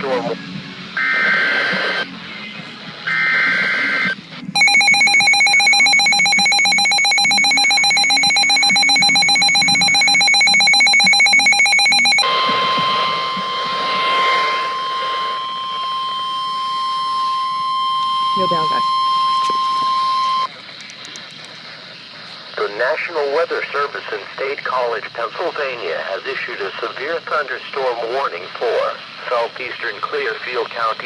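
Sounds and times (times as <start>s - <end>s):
two-tone attention signal: 3.1s - 20.5s
steady alert tone: 4.6s - 20.5s.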